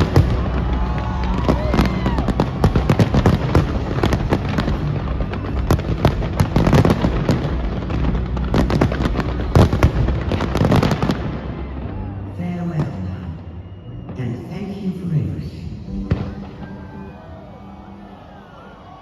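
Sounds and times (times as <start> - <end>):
fireworks bangs and crackling: 0.0 - 14.9.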